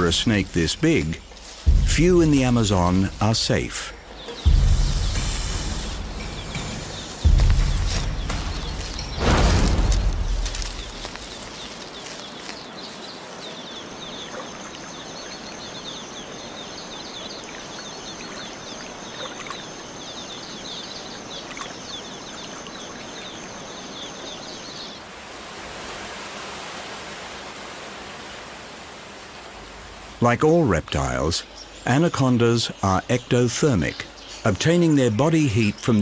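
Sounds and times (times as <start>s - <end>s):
rushing hiss: 0.0s - 13.4s
animals chirping: 0.0s - 25.0s, 29.6s - 36.0s.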